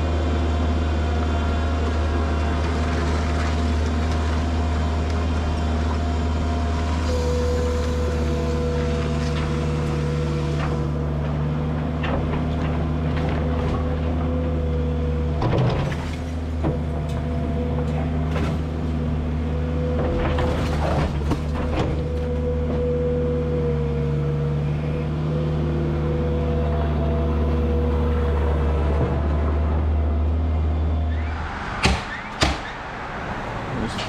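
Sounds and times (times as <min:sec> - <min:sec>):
engine drone: 0:00.0 - 0:34.0
knocks and clatter of work: 0:07.1 - 0:14.6, 0:15.3 - 0:18.7, 0:19.9 - 0:23.0, 0:31.8 - 0:32.8.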